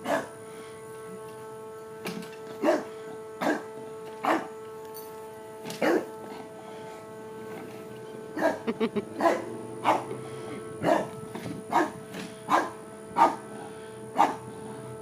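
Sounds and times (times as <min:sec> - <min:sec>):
dog barking deeply: 0:00.0 - 0:00.3, 0:02.6 - 0:04.5, 0:05.8 - 0:06.1, 0:08.4 - 0:10.2, 0:10.8 - 0:14.5
steady hum: 0:00.0 - 0:15.0.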